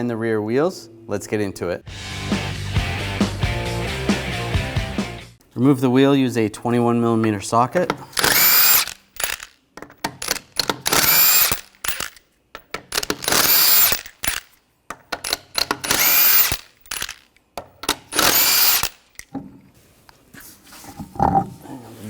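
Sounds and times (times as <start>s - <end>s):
clicks and knocks of nuts: 7.8s - 19.4s
power tool whining: 8.2s - 9.5s, 10.2s - 12.2s, 12.9s - 14.5s, 15.2s - 17.3s, 17.9s - 19.2s.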